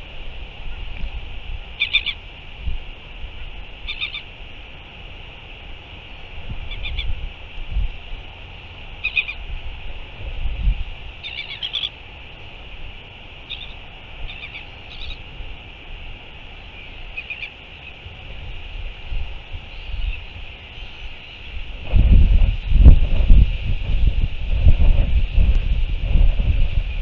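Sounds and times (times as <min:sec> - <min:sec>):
wind rumble on microphone: 0:00.0 - 0:27.0
short high bird calls: 0:01.8 - 0:02.2, 0:03.8 - 0:04.3, 0:06.7 - 0:07.1, 0:09.0 - 0:09.4, 0:11.2 - 0:12.0, 0:13.4 - 0:15.2, 0:16.6 - 0:18.0.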